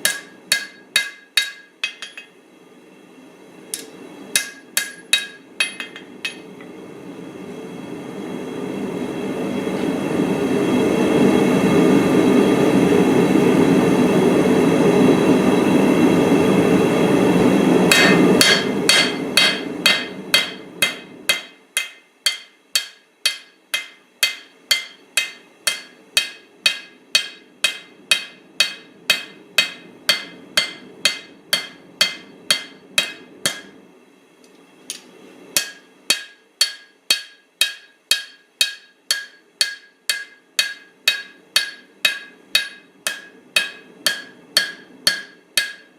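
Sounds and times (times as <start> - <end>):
hammer striking steel on anvil: 0.0 - 2.4, 3.7 - 6.6, 17.9 - 33.8, 34.9 - 45.9.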